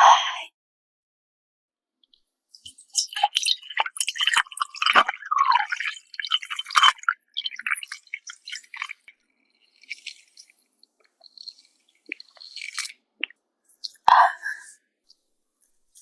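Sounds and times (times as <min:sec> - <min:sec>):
sipping and swallowing: 0:02.6 - 0:14.1
mouth clicks: 0:09.8 - 0:14.2.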